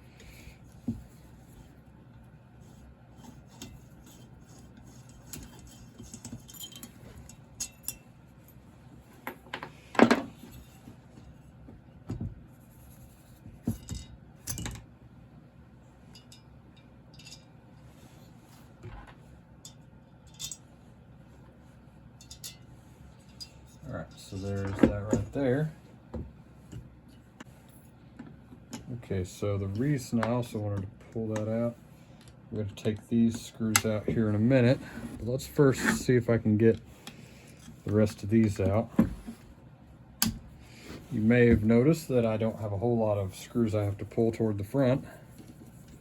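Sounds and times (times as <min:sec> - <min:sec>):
metal tools clinking and knocking: 0:05.1 - 0:08.0, 0:16.1 - 0:17.5, 0:19.6 - 0:20.6, 0:22.2 - 0:22.6.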